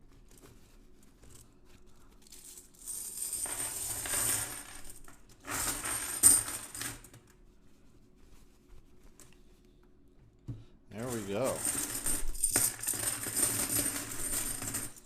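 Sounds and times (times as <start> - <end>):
coins clattering onto table: 2.4 - 7.1, 11.2 - 15.0.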